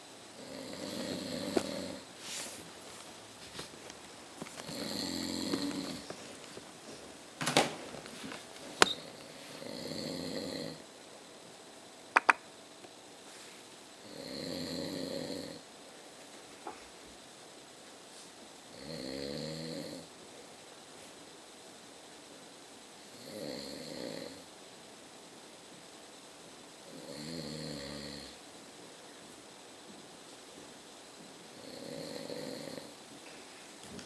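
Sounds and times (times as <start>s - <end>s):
man snoring: 0.4s - 2.1s, 4.6s - 6.1s, 9.6s - 10.8s, 14.0s - 15.6s, 18.7s - 20.1s, 23.1s - 24.4s, 26.9s - 28.4s, 31.6s - 33.0s.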